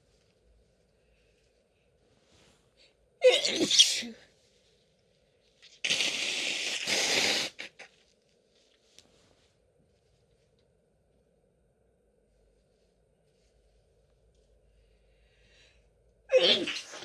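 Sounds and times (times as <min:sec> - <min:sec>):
woman sneezing: 0:03.2 - 0:04.2.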